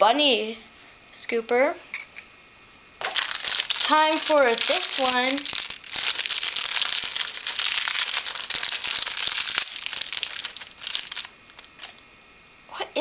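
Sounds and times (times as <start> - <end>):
wrapper crinkling: 3.0 - 12.0.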